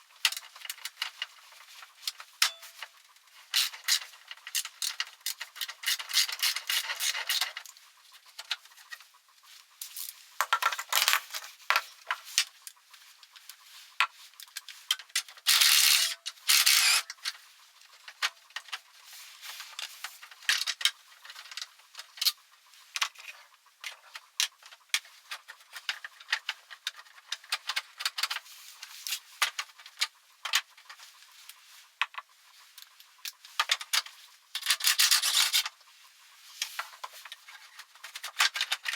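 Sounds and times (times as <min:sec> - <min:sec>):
small metal parts clinking: 0:15.2 - 0:17.1
metal rubbing or scraping: 0:15.5 - 0:17.1.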